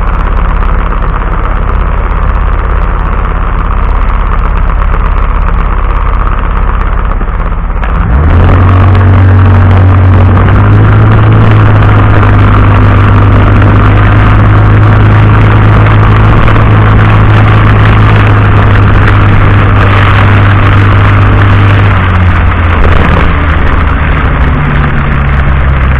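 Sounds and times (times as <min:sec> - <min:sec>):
vehicle engine running: 0:00.0 - 0:25.9.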